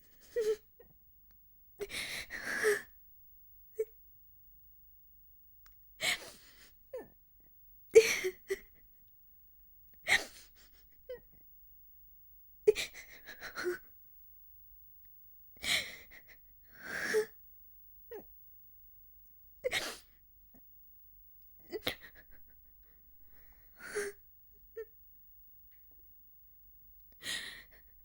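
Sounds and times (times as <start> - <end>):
woman sobbing: 7.9 - 8.8, 12.7 - 13.9, 21.7 - 23.0.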